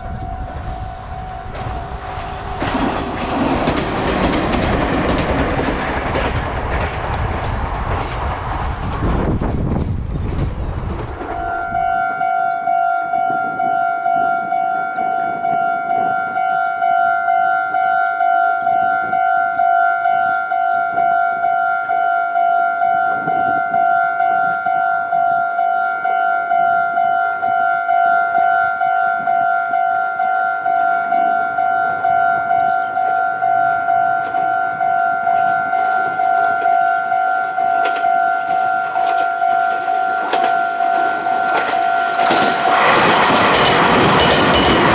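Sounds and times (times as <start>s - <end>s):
level crossing warning bell: 11.2s - 44.9s.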